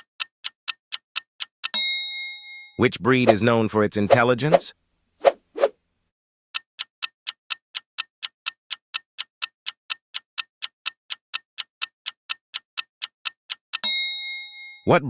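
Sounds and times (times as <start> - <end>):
ticking clock: 0.0 - 2.0, 6.6 - 14.3.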